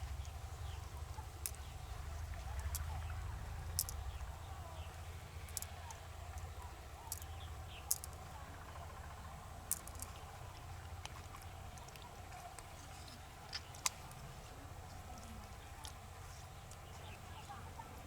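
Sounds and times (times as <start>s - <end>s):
low steady hum: 0.0s - 18.0s
sharp clicks and light taps: 0.2s - 4.3s, 5.4s - 8.9s, 9.6s - 14.2s.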